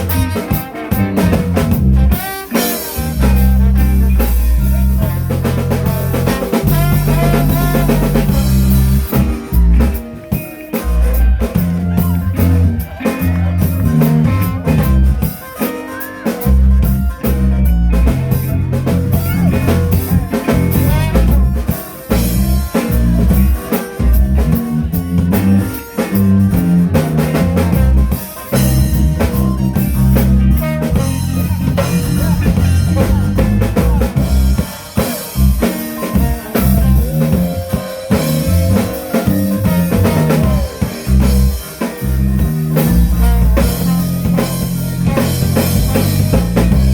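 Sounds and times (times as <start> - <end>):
bass line: 0.0 - 15.6, 16.2 - 46.9
drum kit: 0.0 - 46.9
guitar: 0.0 - 46.9.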